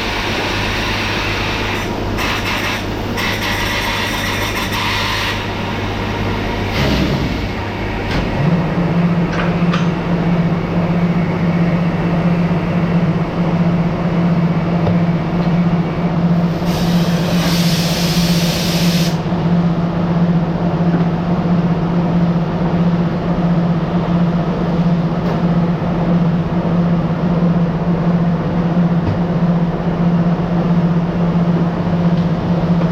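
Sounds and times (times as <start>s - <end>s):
factory machinery humming: 0.0s - 32.9s
burst of hiss: 16.6s - 19.2s.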